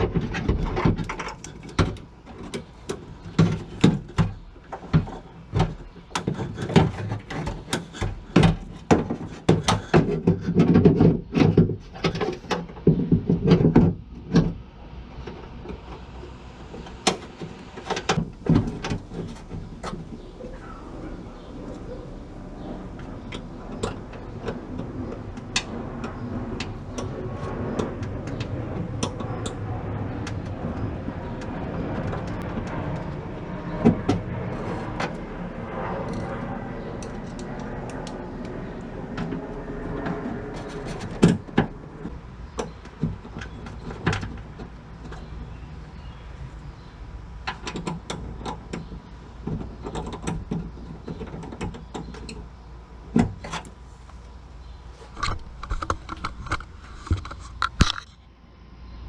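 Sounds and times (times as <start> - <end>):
hands and tools clicking and tapping: 47.4 - 52.4.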